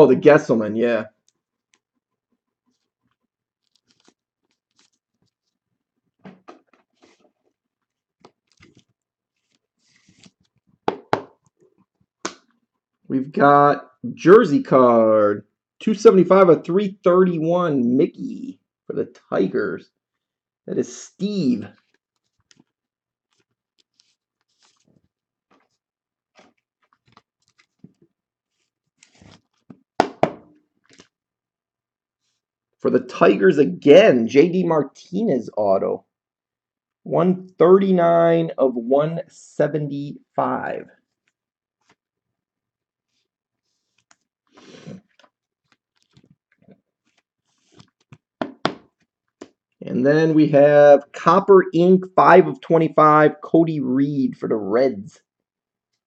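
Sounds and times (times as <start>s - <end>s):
crinkling rustle: 1.2s - 10.8s, 21.6s - 29.9s, 30.6s - 31.2s, 43.1s - 48.3s
cards and packaging rustling: 3.6s - 12.6s, 21.4s - 31.2s, 43.1s - 49.6s.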